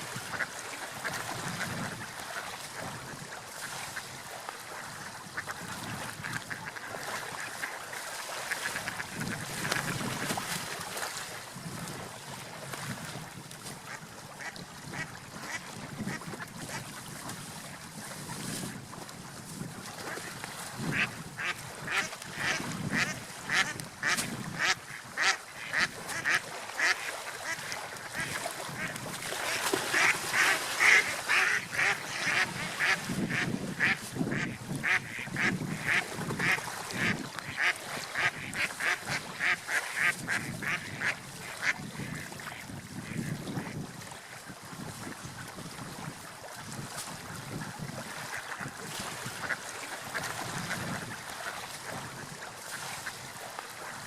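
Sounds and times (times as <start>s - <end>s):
water rushing: 0.0s - 18.9s, 19.8s - 42.7s
wind: 0.0s - 54.0s
ducks quacking: 5.3s - 7.8s, 20.9s - 43.8s, 49.3s - 51.6s.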